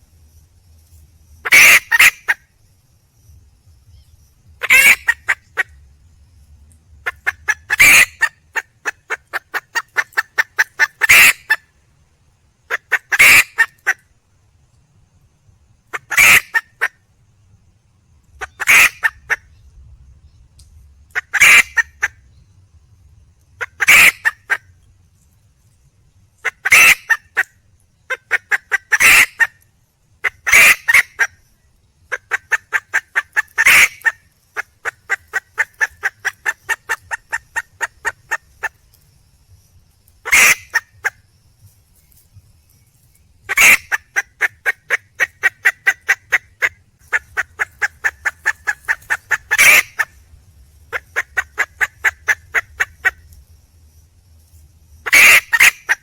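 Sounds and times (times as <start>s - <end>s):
hen calling: 1.4s - 2.4s, 4.6s - 5.8s, 7.0s - 11.6s, 12.7s - 14.0s, 15.9s - 16.9s, 18.4s - 19.5s, 21.1s - 22.2s, 23.6s - 24.6s, 26.4s - 27.5s, 28.1s - 29.5s, 30.2s - 31.4s, 32.1s - 38.8s, 40.2s - 41.2s, 43.5s - 50.2s, 50.9s - 53.3s, 55.0s - 56.0s
hen clucking: 1.4s - 2.4s, 4.6s - 5.8s, 7.0s - 11.6s, 12.7s - 14.0s, 15.9s - 16.9s, 18.4s - 19.5s, 21.1s - 22.2s, 23.6s - 24.6s, 26.4s - 27.5s, 28.1s - 29.5s, 30.2s - 31.4s, 32.1s - 38.8s, 40.2s - 41.2s, 43.5s - 50.2s, 50.9s - 53.3s, 55.0s - 56.0s.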